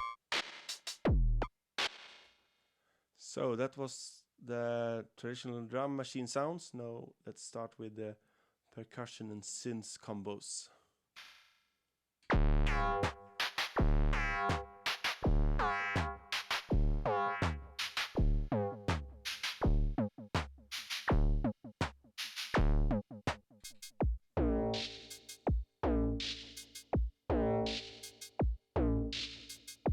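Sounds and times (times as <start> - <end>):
drum machine pattern: 12.3 - 21.5, 22.2 - 29.9.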